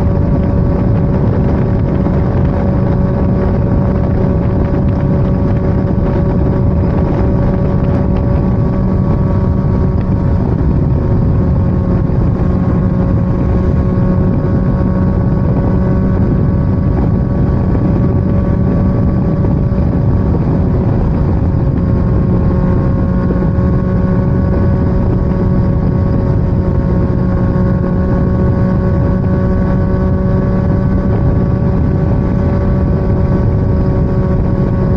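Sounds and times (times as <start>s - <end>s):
motorcycle engine running: 0.0s - 34.9s
wind noise on microphone: 0.0s - 34.9s.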